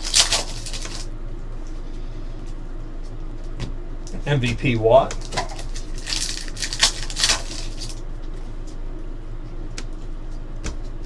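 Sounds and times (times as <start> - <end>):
cards rustling and sliding: 0.0 - 1.1, 5.2 - 8.0
low steady hum: 0.0 - 11.0.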